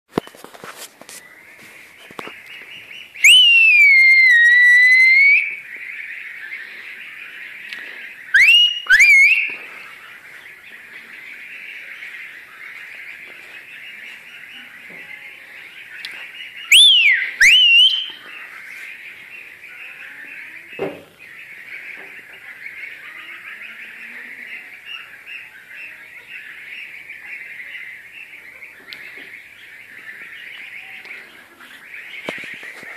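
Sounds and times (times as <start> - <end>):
loud whistling: 3.2 - 5.6, 8.3 - 9.5, 16.7 - 18.2
high-pitched background chatter: 6.6 - 32.9.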